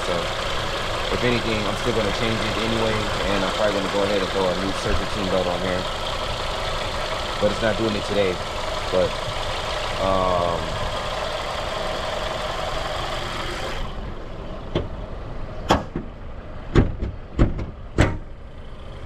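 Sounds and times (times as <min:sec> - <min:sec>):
car engine idling: 0:00.0 - 0:19.0
sharp irregular knocks: 0:15.7 - 0:18.3.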